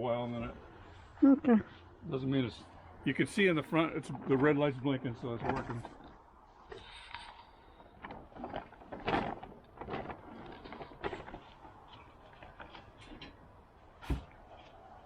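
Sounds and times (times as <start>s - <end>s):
knocks scrapes and rustles: 4.0s - 15.0s.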